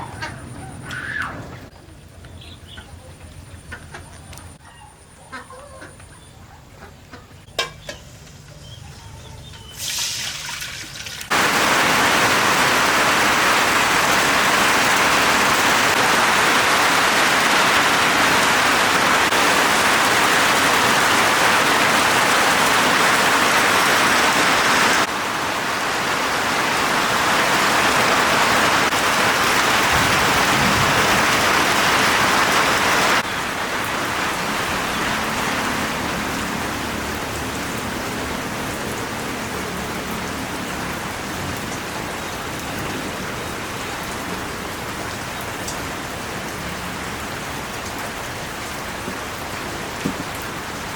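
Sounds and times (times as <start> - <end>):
heavy rain: 11.2 - 50.9.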